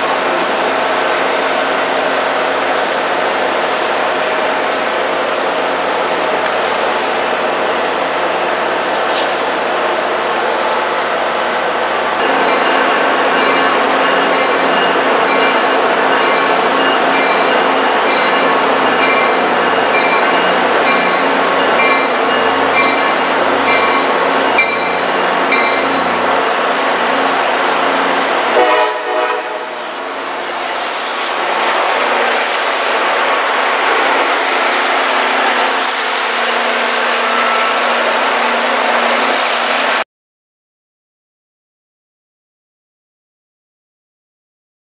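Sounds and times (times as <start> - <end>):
train wheels rumbling on rail: 0.0 - 40.0.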